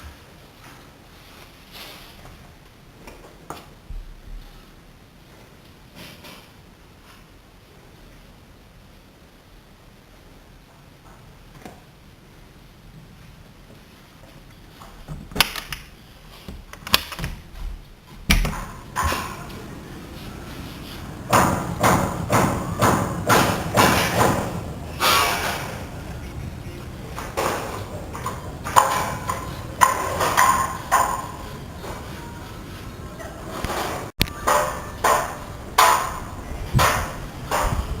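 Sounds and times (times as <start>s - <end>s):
hammering on metal: 21.1s - 26.0s, 27.1s - 31.5s, 34.2s - 38.0s.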